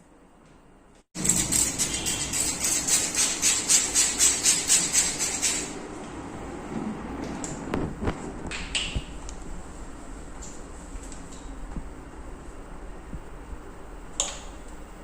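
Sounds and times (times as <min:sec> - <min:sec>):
rhythmic scraping on skin: 0:01.2 - 0:05.7.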